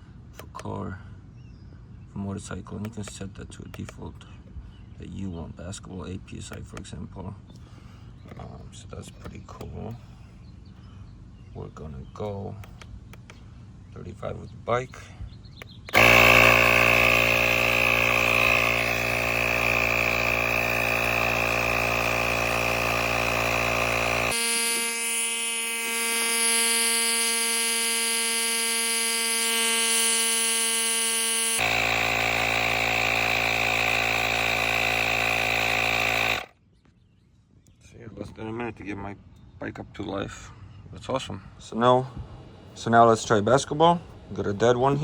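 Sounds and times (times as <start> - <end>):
tire inflator compressor running: 15.6 - 36.6.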